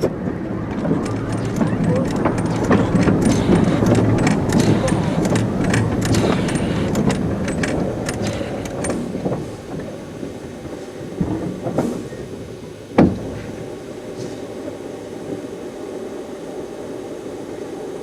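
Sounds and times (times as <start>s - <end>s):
train wheels clattering: 0.0s - 14.6s
loud knock: 13.0s - 13.5s.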